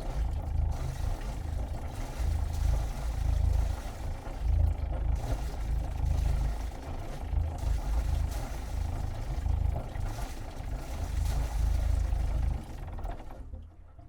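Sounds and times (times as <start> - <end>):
wet exhaust splattering water: 0.0 - 13.2
diesel engine low rumble: 0.0 - 14.0.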